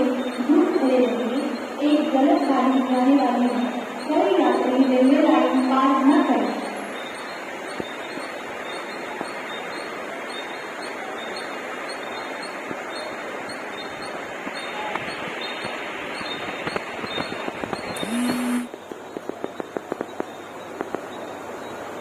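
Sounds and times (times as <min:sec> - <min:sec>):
train wheels on track: 0:12.6 - 0:21.1
track clicks: 0:13.5 - 0:21.0.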